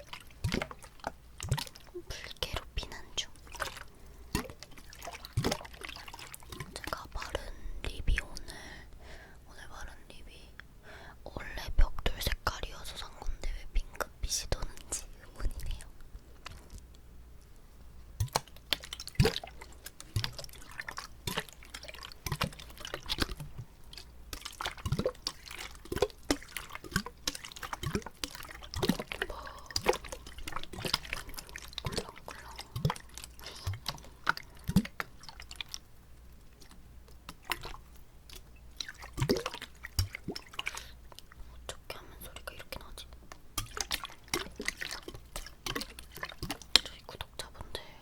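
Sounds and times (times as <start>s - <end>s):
wet mouth clicks and pops: 18.2s - 20.5s.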